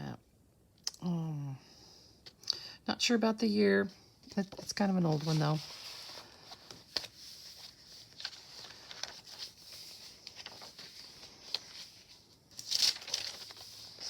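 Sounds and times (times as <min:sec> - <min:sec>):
steady faint hiss: 0:00.0 - 0:14.0
paper rustling: 0:04.4 - 0:14.0.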